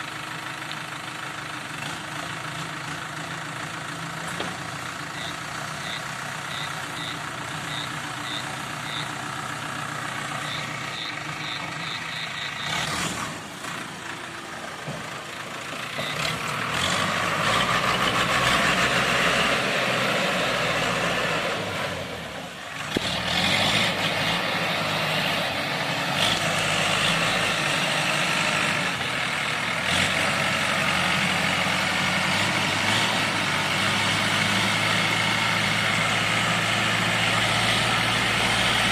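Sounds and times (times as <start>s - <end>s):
diesel engine running: 0.0s - 38.9s
short high beeps: 5.2s - 9.2s.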